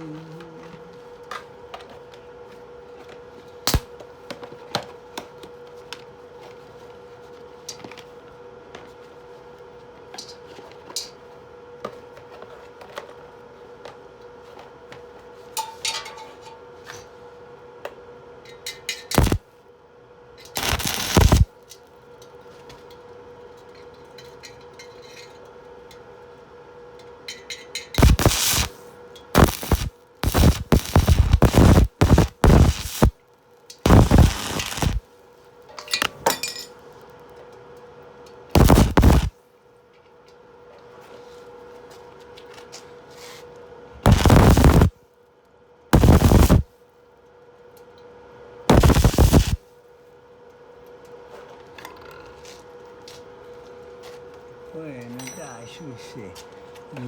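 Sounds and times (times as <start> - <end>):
welding arc crackling: 3.7 - 3.9, 19.1 - 19.4, 20.6 - 21.5, 28.0 - 28.8, 29.4 - 33.1, 33.9 - 35.0, 38.6 - 39.3, 44.1 - 44.9, 46.0 - 46.6, 48.7 - 49.6
faint steady hum: 20.6 - 21.5, 28.0 - 33.1, 33.9 - 35.0, 38.6 - 39.3, 46.0 - 46.6.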